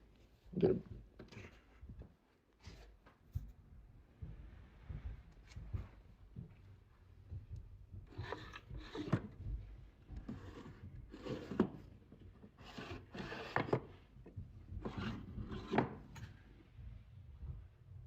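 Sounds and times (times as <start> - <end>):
wood rubbing and scraping: 10.1 - 14.2, 14.8 - 16.2.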